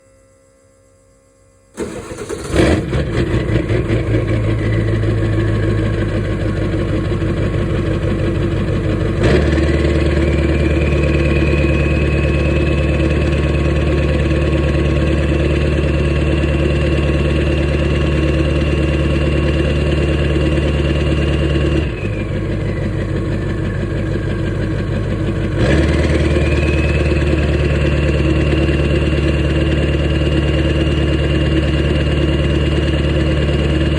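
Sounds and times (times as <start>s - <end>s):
diesel engine running: 1.8s - 33.9s
turbocharger whistle: 4.1s - 6.4s, 9.2s - 30.5s.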